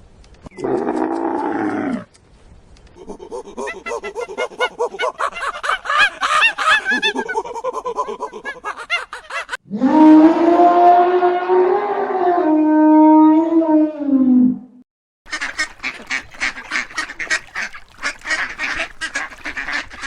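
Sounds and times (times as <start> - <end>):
ducks quacking rapidly: 3.1 - 7.4, 15.3 - 20.0.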